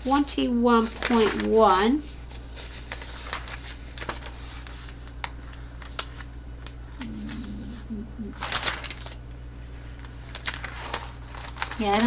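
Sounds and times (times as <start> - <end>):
low steady hum: 0.0 - 12.0
paper rustling: 0.0 - 12.0
murmured voice: 7.0 - 8.4.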